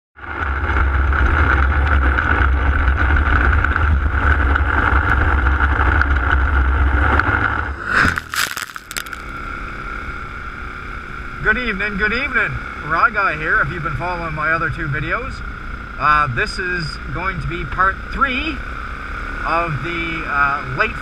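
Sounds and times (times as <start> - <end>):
atv engine running: 0.2 - 7.7, 9.2 - 21.0
crackling noise: 7.4 - 9.3.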